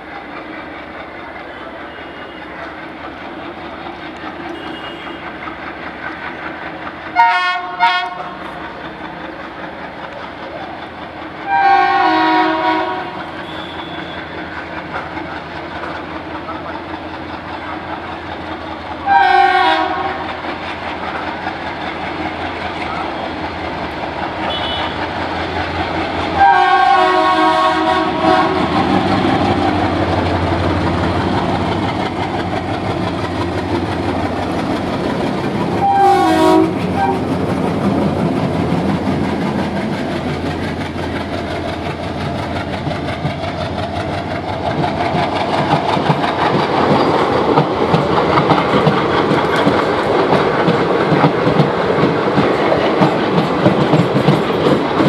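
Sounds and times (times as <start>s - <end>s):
train running noise: 0.0s - 55.0s
locomotive horn blast: 4.5s - 5.4s, 7.2s - 8.3s, 11.5s - 14.4s, 19.0s - 20.2s, 24.4s - 25.1s, 26.4s - 28.8s, 35.8s - 37.2s.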